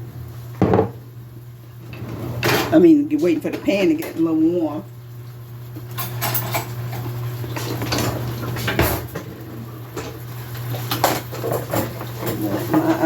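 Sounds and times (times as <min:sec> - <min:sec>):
steady low hum: 0:00.0 - 0:13.0
kitchen utensils and dishes clattering: 0:01.9 - 0:04.3, 0:05.9 - 0:13.0.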